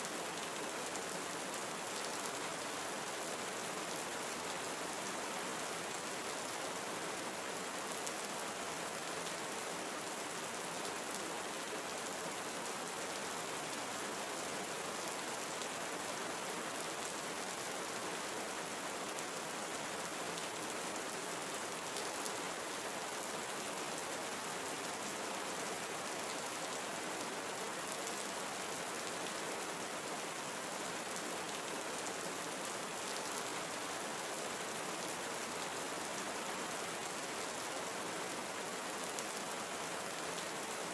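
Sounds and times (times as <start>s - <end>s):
rain falling on foliage: 0.0s - 40.9s.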